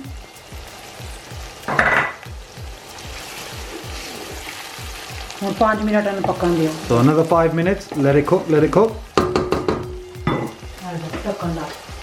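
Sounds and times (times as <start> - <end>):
food sizzling in hot oil: 0.0 - 12.0
low thumping beat: 0.0 - 12.0
pot clatter: 1.7 - 2.2, 9.2 - 11.4.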